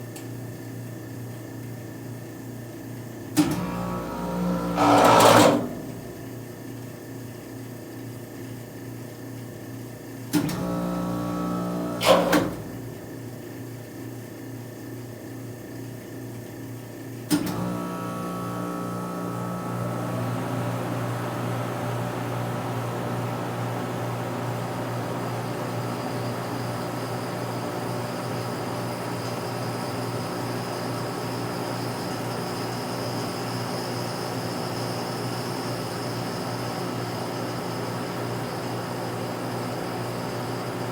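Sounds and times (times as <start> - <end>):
chiller electrical hum: 0.0 - 40.9
compressor clunk: 3.4 - 6.4, 10.4 - 13.0
loud strained compressor hum: 3.7 - 6.4.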